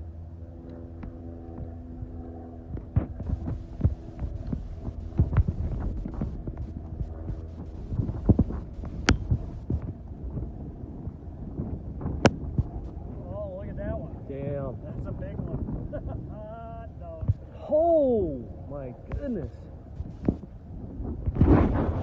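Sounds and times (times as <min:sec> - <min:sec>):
low steady hum: 0:00.0 - 0:22.0
dull thumps: 0:02.8 - 0:09.8.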